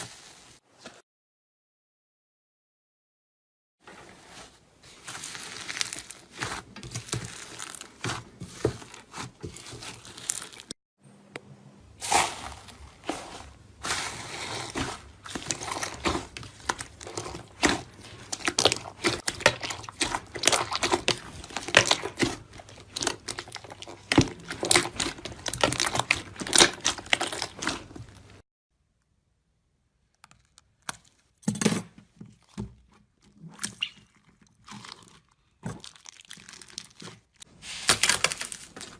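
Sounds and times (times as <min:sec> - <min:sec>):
slime crackling and popping: 0:14.0 - 0:28.4.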